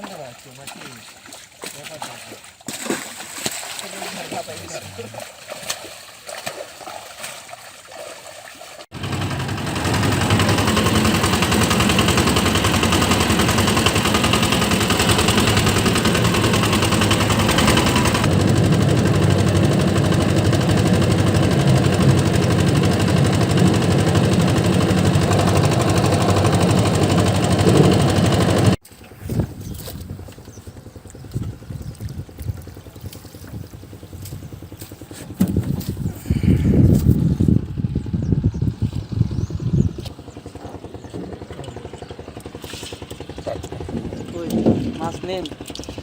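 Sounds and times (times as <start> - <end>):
engine running loudly: 8.9 - 28.8.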